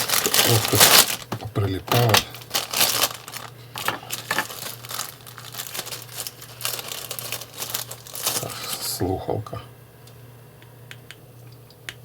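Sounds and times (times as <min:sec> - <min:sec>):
packaging crinkling and rustling: 0:00.0 - 0:09.0.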